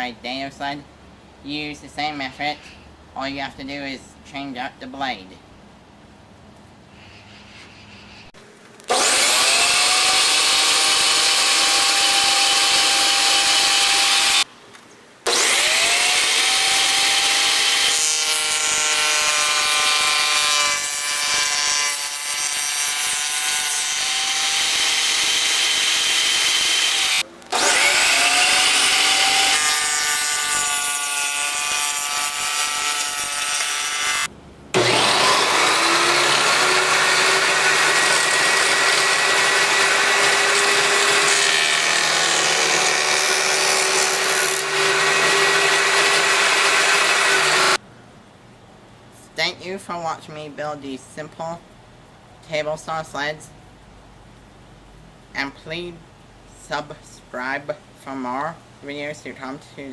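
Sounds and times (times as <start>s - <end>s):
saw cutting wood: 8.9s - 14.5s, 15.3s - 47.8s
table saw whining: 8.9s - 14.5s, 15.3s - 47.8s.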